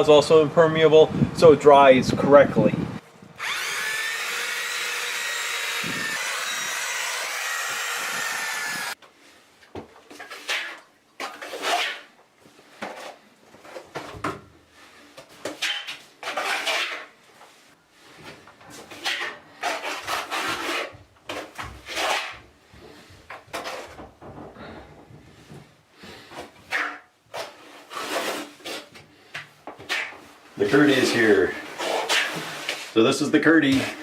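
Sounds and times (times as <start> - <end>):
rough scraping strokes: 18.8 - 22.4, 26.6 - 28.9, 29.8 - 34.0.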